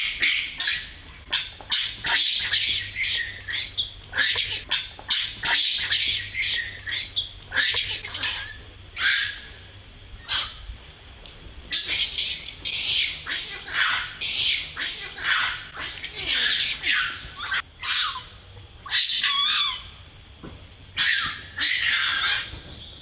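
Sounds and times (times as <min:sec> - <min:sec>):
baby monkey crying: 0:01.4 - 0:09.5, 0:11.7 - 0:19.9, 0:21.0 - 0:22.5.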